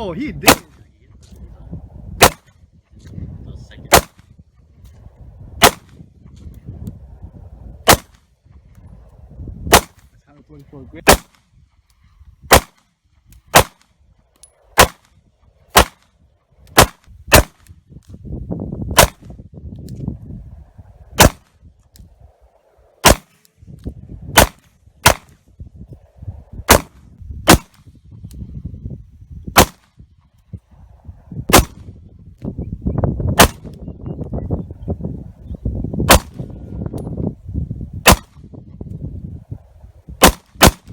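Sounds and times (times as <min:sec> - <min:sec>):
low rumble: 0:00.0 - 0:11.4
pistol shots: 0:00.4 - 0:00.7, 0:02.2 - 0:02.5, 0:03.9 - 0:04.2, 0:05.6 - 0:05.9, 0:07.9 - 0:08.2, 0:09.7 - 0:10.0, 0:11.1 - 0:11.4, 0:12.5 - 0:12.8, 0:13.5 - 0:13.9, 0:14.8 - 0:15.1, 0:15.7 - 0:16.1, 0:16.8 - 0:17.6, 0:19.0 - 0:19.3, 0:21.2 - 0:21.5, 0:23.0 - 0:23.4, 0:24.4 - 0:25.4, 0:26.7 - 0:27.8, 0:29.6 - 0:29.9, 0:31.5 - 0:31.8, 0:33.4 - 0:33.7, 0:36.1 - 0:36.4, 0:38.0 - 0:38.4, 0:40.2 - 0:40.9.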